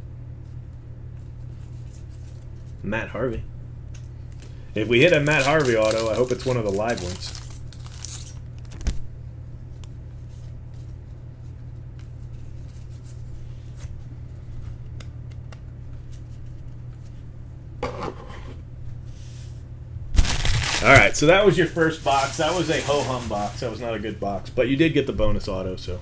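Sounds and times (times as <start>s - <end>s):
low electrical hum: 0.0s - 26.0s
cards rustling: 4.4s - 9.0s, 20.2s - 24.2s.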